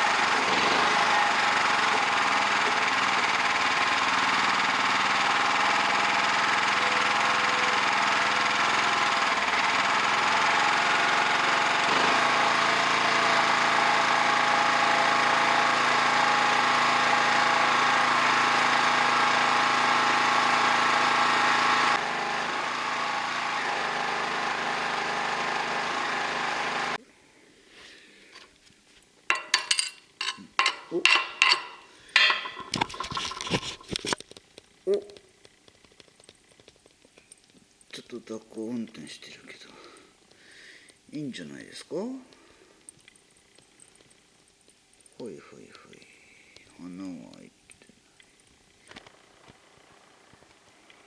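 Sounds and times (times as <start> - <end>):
welding machine hum: 0.0 - 27.0.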